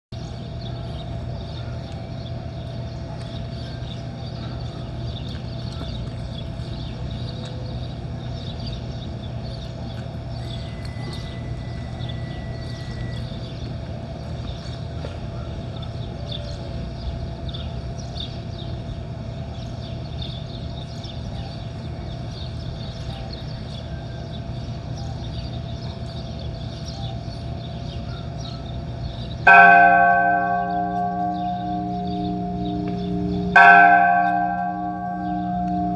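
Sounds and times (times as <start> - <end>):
low outdoor hum: 0.1 - 35.9
birds chirping: 0.2 - 35.9.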